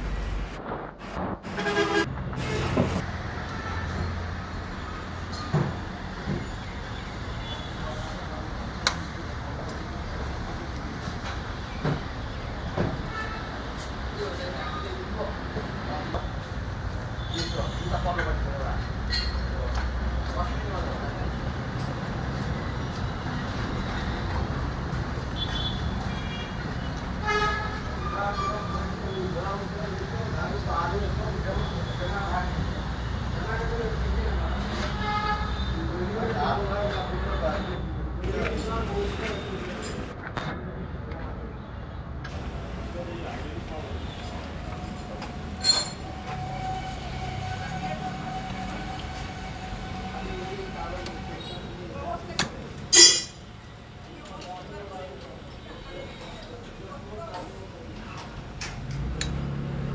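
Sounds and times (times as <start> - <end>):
engine running rumble: 0.0 - 3.2
metallic clink: 52.9 - 53.4.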